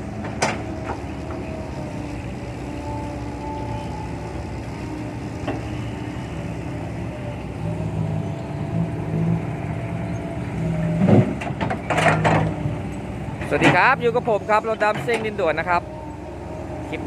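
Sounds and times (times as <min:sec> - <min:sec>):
excavator diesel engine running: 0:00.0 - 0:17.0
hydraulic whining: 0:00.0 - 0:17.0.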